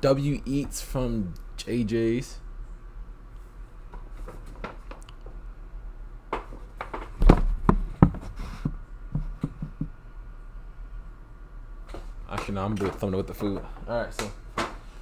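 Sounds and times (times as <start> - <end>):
loud thumps on table: 6.4 - 9.9.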